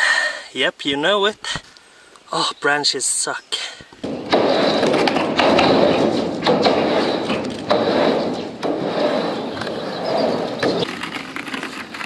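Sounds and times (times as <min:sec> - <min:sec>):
skateboard knocking on bumps: 0:04.0 - 0:12.0
skateboard wheels rolling: 0:04.0 - 0:12.0.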